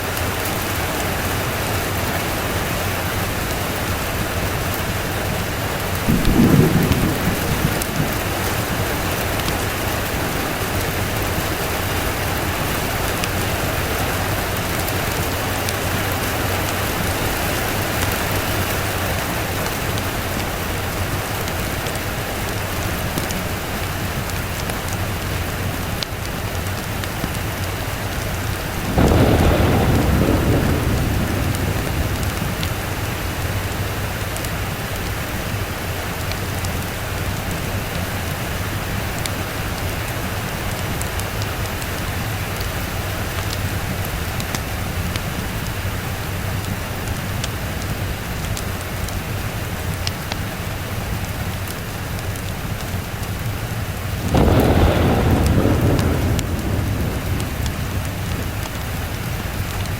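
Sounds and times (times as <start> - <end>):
steady rain falling: 0.0 - 59.9
thunder rumbling: 1.9 - 26.1, 26.8 - 36.3, 53.8 - 59.9.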